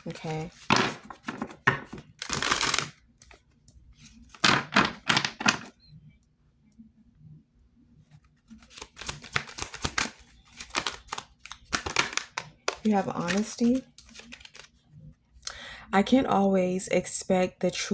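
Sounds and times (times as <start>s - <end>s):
cards being shuffled: 0.0s - 3.4s, 8.5s - 14.7s.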